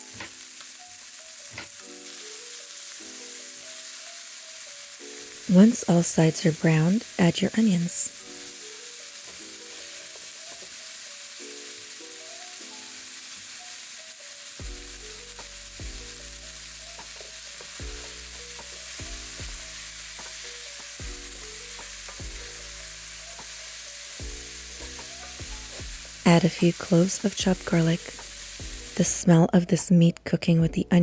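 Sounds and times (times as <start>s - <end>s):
meat and onions sizzling: 0.0s - 29.4s
soft background music: 0.0s - 31.0s.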